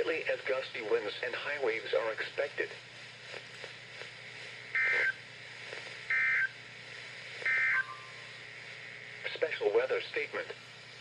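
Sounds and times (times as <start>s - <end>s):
faint radio hiss: 0.0s - 11.0s
electronic data buzzes: 4.7s - 5.3s, 6.0s - 6.6s, 7.4s - 8.4s.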